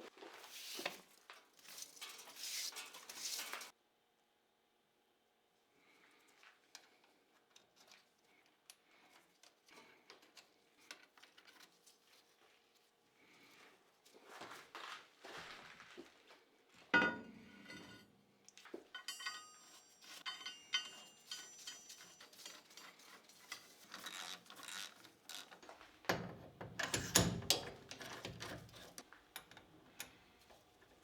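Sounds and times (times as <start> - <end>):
metal tools clinking: 18.8 - 24.9, 26.1 - 29.6.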